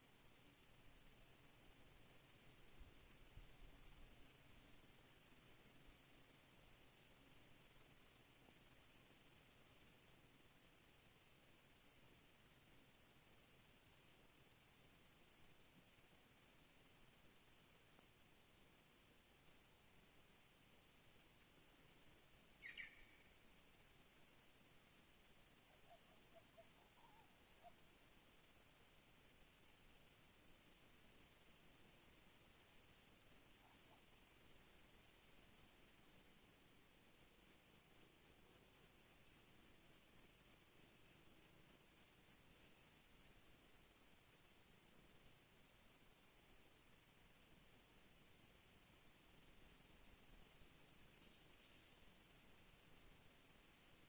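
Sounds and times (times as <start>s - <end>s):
crickets chirping: 0.0s - 54.0s
insect pulsing chirp: 0.0s - 54.0s
bird chirp: 22.6s - 23.2s.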